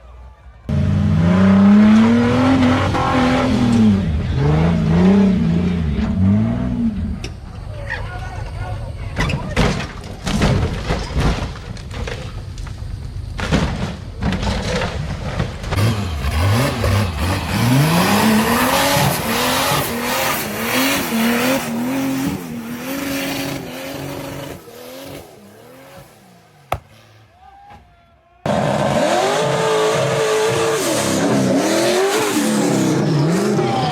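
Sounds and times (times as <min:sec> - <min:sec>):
off-road vehicle engine revving: 0:00.7 - 0:07.4, 0:15.3 - 0:27.8, 0:28.5 - 0:33.9
irregular knocks and thuds: 0:26.7 - 0:28.0.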